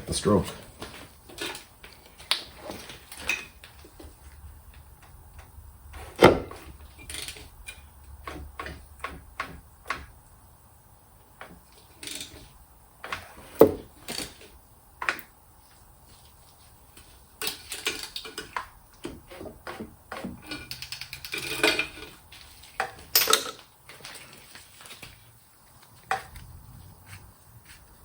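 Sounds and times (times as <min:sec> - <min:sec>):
metal tools clicking and clunking: 0:20.2 - 0:22.2, 0:22.8 - 0:24.0.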